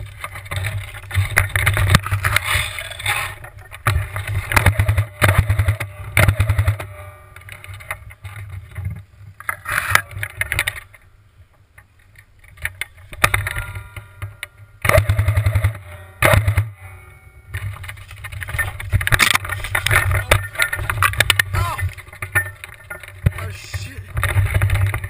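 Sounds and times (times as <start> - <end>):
airsoft gun firing bursts: 14.9 - 16.6.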